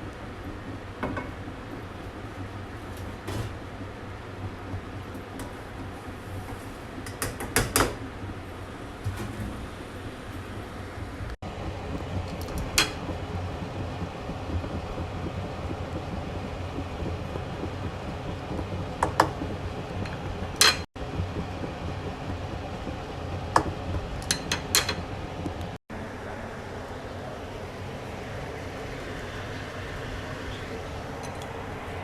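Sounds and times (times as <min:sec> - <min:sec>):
steady background hum: 0:00.0 - 0:32.0
kitchen utensils clinking: 0:20.1 - 0:20.9, 0:24.2 - 0:25.0.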